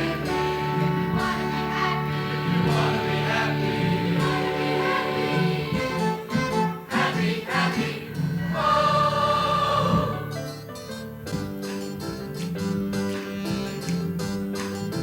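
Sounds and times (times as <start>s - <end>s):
gospel choir singing: 0.0s - 10.4s.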